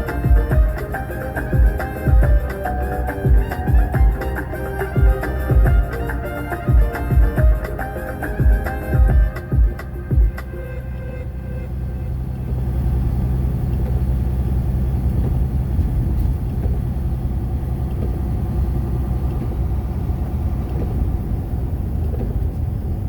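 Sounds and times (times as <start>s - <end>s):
song playing: 0.0s - 11.7s
car engine and road noise: 0.0s - 23.0s.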